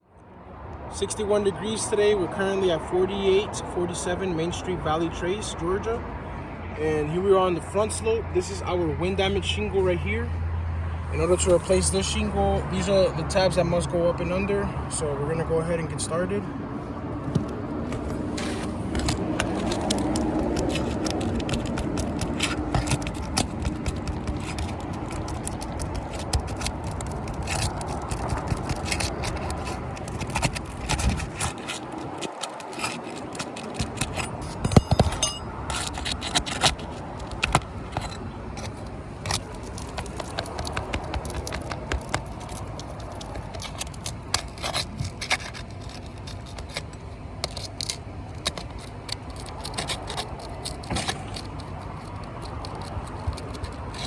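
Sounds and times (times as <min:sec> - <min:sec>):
shingles scraping and crackling: 0:17.4 - 0:54.0.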